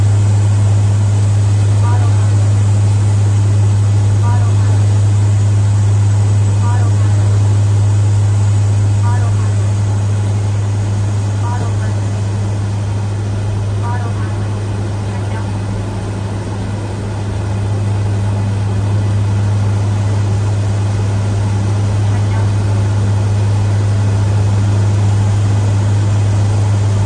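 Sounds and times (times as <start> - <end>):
aircraft engines droning in cabin: 0.0 - 27.0.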